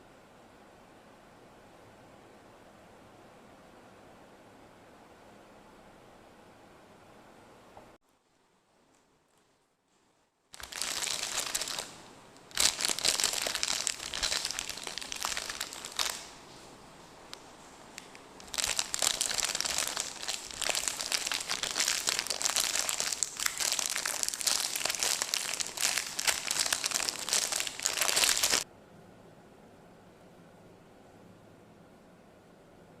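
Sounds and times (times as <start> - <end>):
plastic candy wrapper crinkling: 10.6 - 16.5, 17.3 - 28.6.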